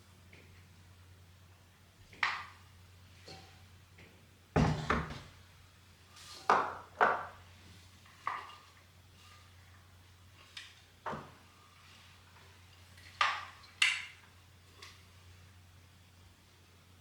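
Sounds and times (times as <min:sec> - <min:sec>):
kitchen containers and utensils knocking: 0:04.6 - 0:05.3.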